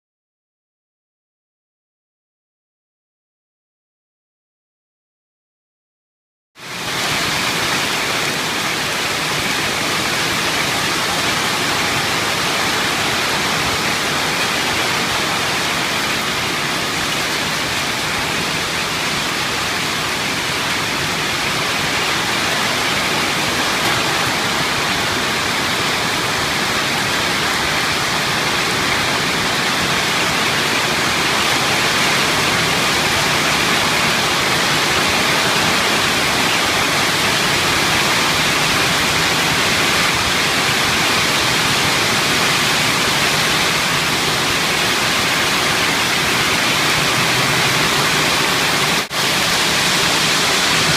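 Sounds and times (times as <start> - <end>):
hail on a roof: 6.8 - 50.9.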